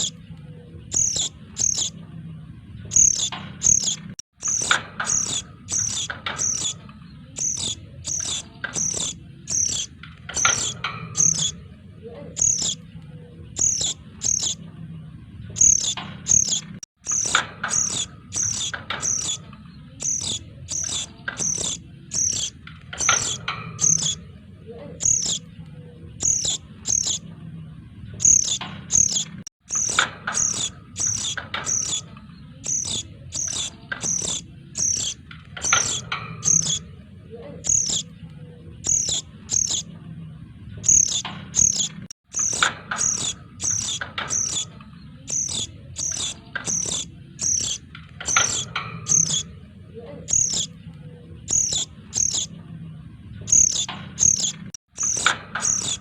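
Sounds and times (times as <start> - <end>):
chicks chirping: 0.9 - 1.9, 2.9 - 6.8, 7.4 - 11.5, 12.4 - 12.8, 13.6 - 14.6, 15.6 - 19.4, 20.0 - 24.2, 25.0 - 25.4, 26.2 - 27.2, 28.2 - 32.0, 32.6 - 36.8, 37.7 - 38.1, 38.9 - 39.8, 40.8 - 44.6, 45.3 - 49.4, 50.3 - 50.7, 51.5 - 52.5, 53.5 - 56.0.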